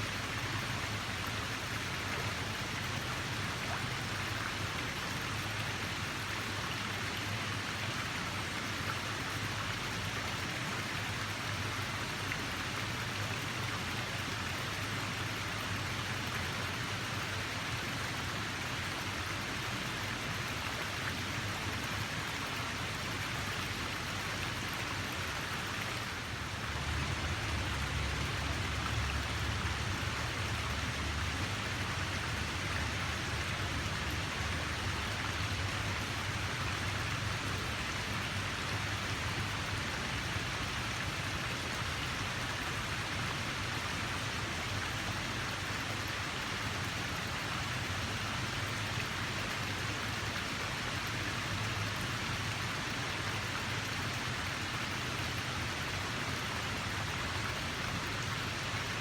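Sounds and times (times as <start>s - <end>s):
rushing water: 0.0s - 59.0s.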